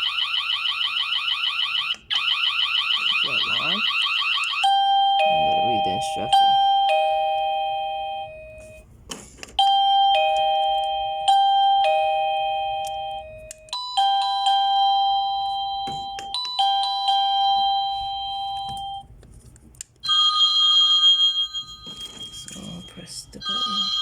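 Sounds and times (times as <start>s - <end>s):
electronic doorbell chimes: 4.6s - 8.8s, 9.6s - 19.1s, 20.0s - 24.0s.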